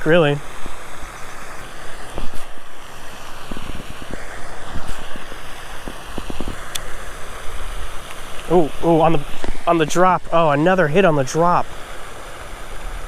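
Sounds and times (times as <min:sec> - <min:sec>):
wind buffeting microphone: 0:03.4 - 0:06.6.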